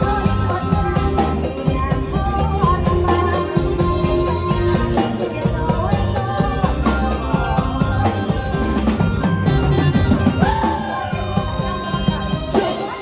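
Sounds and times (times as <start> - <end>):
drum kit beat: 0.0 - 13.0
electronic keyboard melody: 0.0 - 13.0.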